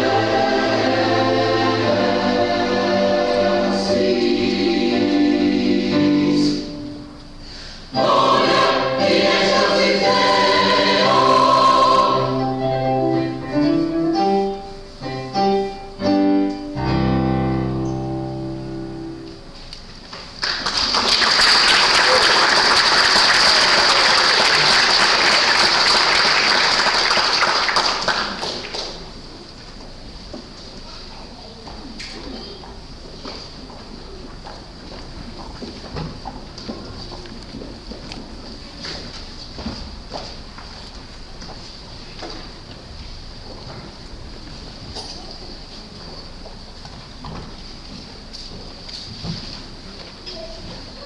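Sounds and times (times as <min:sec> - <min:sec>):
choir singing: 0:00.0 - 0:07.1, 0:07.9 - 0:13.7
crowd applauding: 0:20.4 - 0:29.1.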